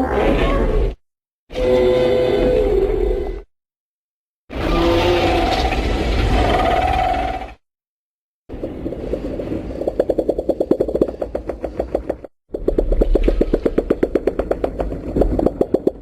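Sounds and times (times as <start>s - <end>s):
monster clicking rattle: 8.6s - 16.0s.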